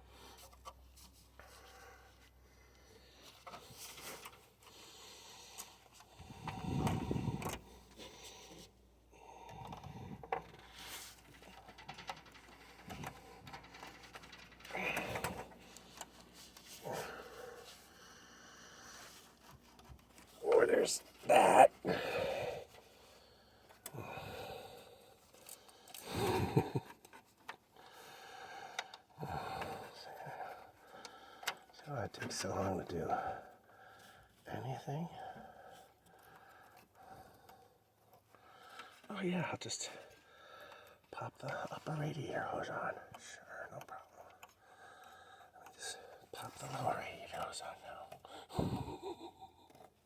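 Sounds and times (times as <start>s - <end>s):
man sighing and breathing hard: 14.6s - 15.6s, 20.4s - 22.8s, 23.9s - 24.9s, 26.0s - 26.9s, 48.4s - 49.6s.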